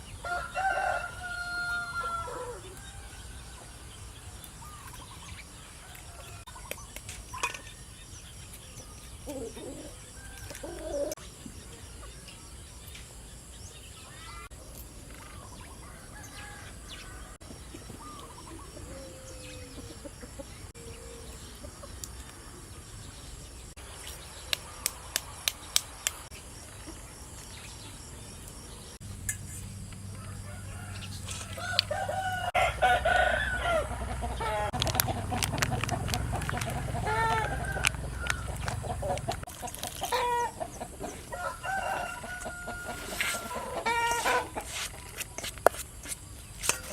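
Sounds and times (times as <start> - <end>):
chickens clucking: 17.7 - 22.1, 32.2 - 45.4.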